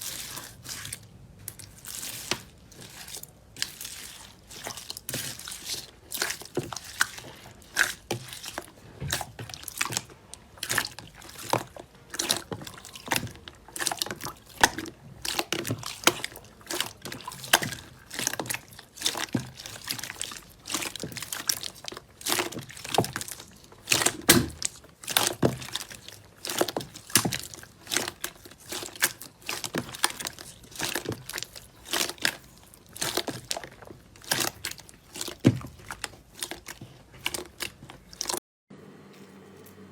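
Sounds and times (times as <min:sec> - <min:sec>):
slime squishing by hand: 0:00.0 - 0:38.4.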